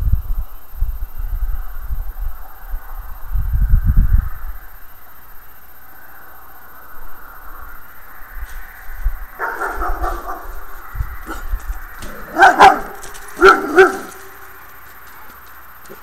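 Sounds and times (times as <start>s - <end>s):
dog barking: 9.4s - 16.0s.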